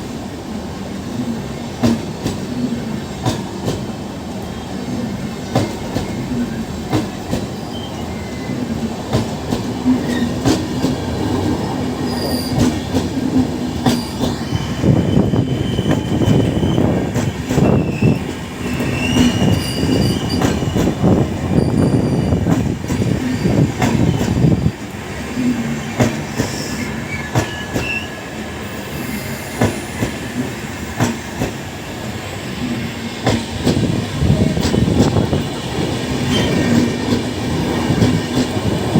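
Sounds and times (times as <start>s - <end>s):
train rumble: 0.0s - 38.9s
train wheels clacking over rail joints: 1.7s - 4.0s, 5.4s - 7.8s, 8.4s - 28.0s, 29.5s - 31.7s, 32.5s - 38.9s
faint wheel squeal: 12.1s - 12.7s, 13.9s - 22.4s, 26.5s - 30.2s, 36.3s - 36.8s.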